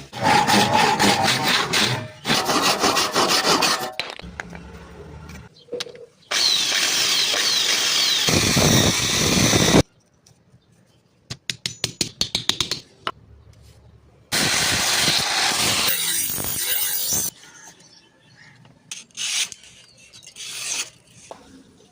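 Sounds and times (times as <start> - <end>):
power tool running: 6.3 - 9.8.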